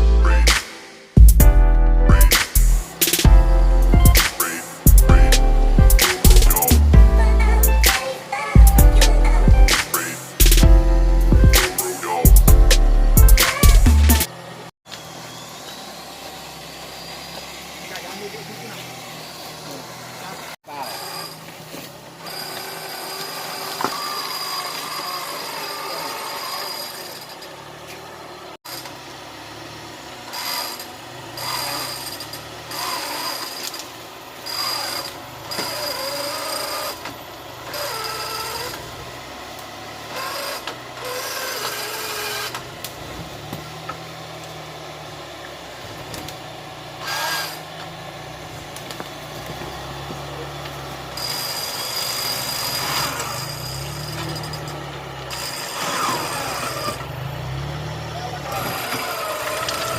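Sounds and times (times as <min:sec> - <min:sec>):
motor revving in bursts: 0:01.4 - 0:59.9.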